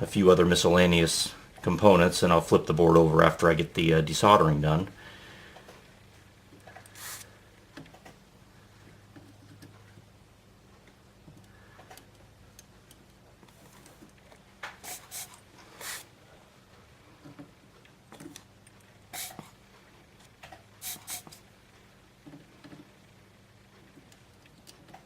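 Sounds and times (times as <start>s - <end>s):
low electrical hum: 0.0s - 25.0s
desoldering hissing bursts: 6.8s - 7.4s, 14.8s - 16.2s, 19.1s - 19.6s, 20.8s - 21.5s.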